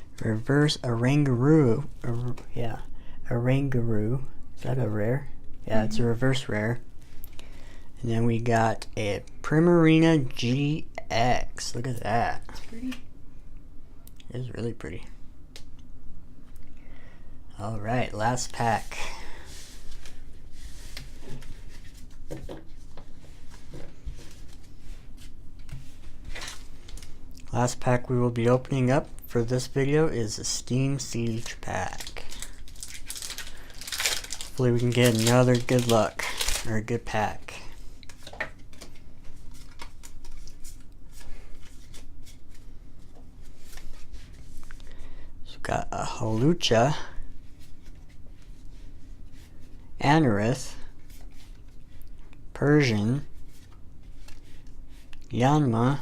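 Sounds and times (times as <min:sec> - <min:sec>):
card packaging rustling and crinkling: 0:18.8 - 0:27.2, 0:31.0 - 0:44.8
foil wrapper crinkling: 0:31.4 - 0:36.9
cards being handled: 0:38.0 - 0:44.8, 0:53.4 - 0:55.2.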